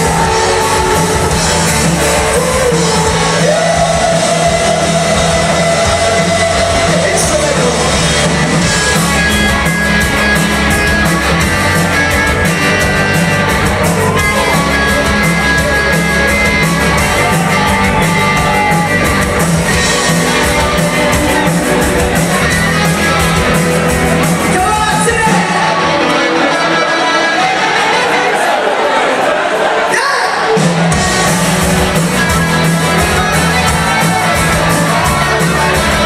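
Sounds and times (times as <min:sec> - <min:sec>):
person singing: 0:00.0 - 0:08.3
bass guitar: 0:00.0 - 0:28.6, 0:30.5 - 0:36.0
electric guitar: 0:00.0 - 0:28.6, 0:30.4 - 0:36.0
drums: 0:00.0 - 0:36.0.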